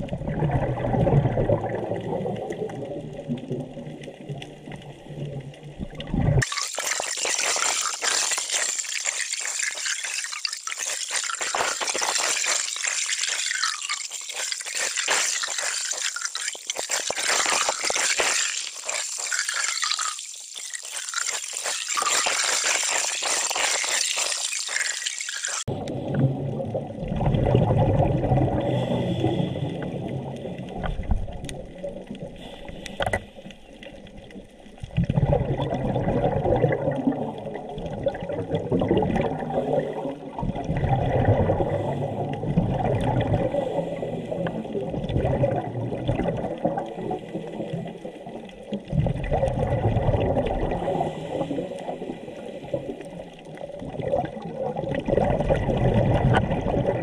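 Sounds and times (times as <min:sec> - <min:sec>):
low underwater bubbling rumble: 0:00.0 - 0:06.4, 0:25.7 - 0:32.5, 0:33.8 - 0:57.0
high crackling sea hiss: 0:06.4 - 0:25.7.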